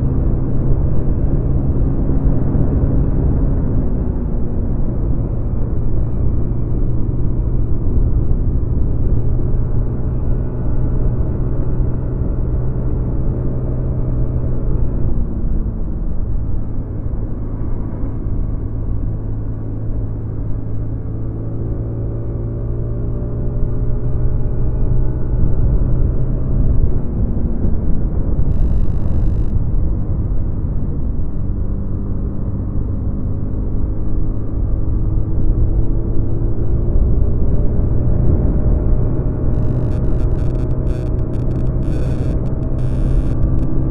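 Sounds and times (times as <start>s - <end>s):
high electronic buzz: 28.5s - 29.6s, 39.5s - 43.9s
scooter engine running: 39.6s - 43.9s.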